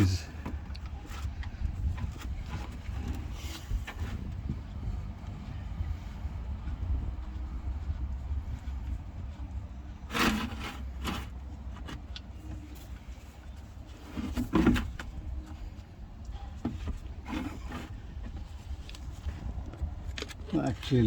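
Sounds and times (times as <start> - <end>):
steady low rumble: 0.0 - 10.1.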